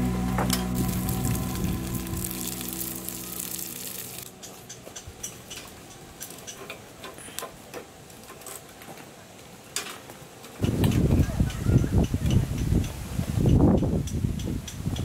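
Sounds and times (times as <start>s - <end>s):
background music: 0.0s - 4.5s.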